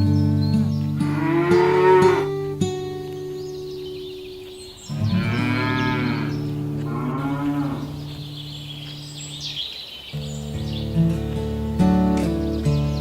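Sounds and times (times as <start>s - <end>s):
cattle mooing: 1.0s - 2.4s, 4.9s - 8.4s.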